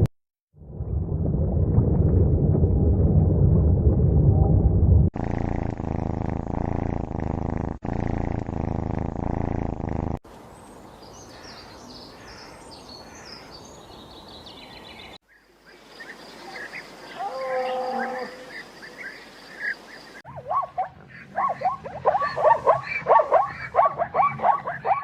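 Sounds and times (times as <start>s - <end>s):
high chirping animal calls: 15.7s - 25.0s
pitched animal call: 16.5s - 18.6s.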